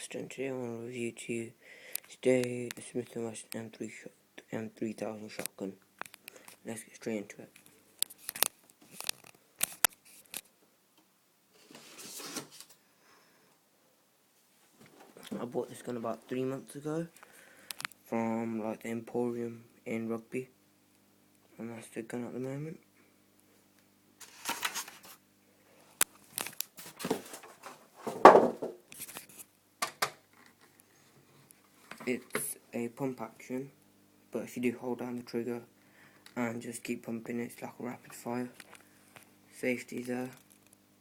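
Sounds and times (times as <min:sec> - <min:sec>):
plastic rustling and scraping: 0:11.5 - 0:12.8, 0:24.2 - 0:25.2, 0:26.1 - 0:29.5
scraping rustle: 0:11.6 - 0:12.7.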